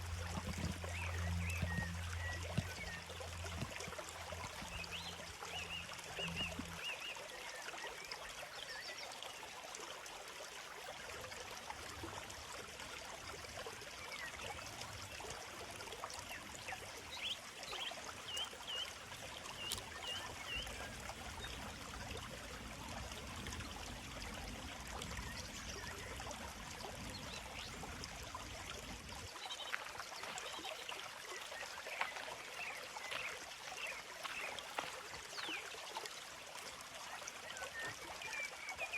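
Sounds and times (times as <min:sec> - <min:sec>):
small stream babbling: 0:00.0 - 0:38.9
birds chirping: 0:00.3 - 0:03.7, 0:17.2 - 0:21.9.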